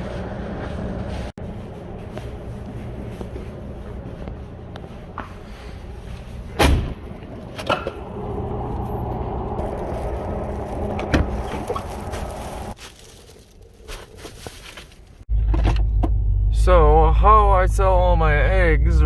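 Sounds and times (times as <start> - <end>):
vehicle engine running: 0.0 - 12.8, 15.3 - 19.0
door thud: 6.6 - 7.0.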